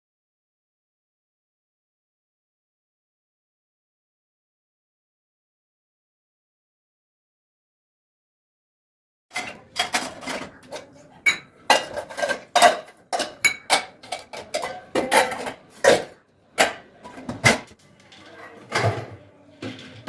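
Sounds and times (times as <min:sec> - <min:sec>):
metal dishes clinking and clattering: 0:09.3 - 0:20.0.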